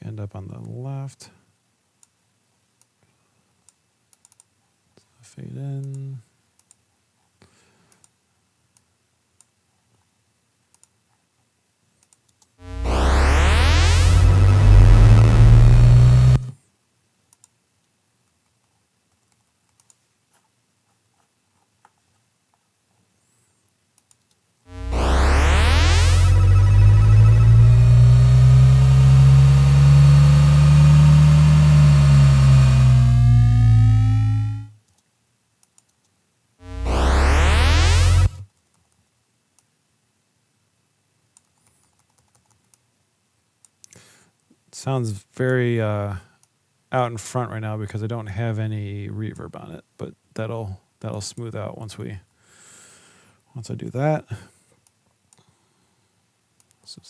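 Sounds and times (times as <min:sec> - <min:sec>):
keyboard and mouse clicks: 0:04.1 - 0:04.5, 0:19.2 - 0:20.5, 0:24.0 - 0:24.4, 0:35.6 - 0:36.1, 0:41.4 - 0:42.8
gliding electronic tones: 0:12.6 - 0:16.5, 0:24.7 - 0:34.8, 0:36.6 - 0:38.4
heavy low hum: 0:12.6 - 0:16.5, 0:24.7 - 0:34.8, 0:36.6 - 0:38.4.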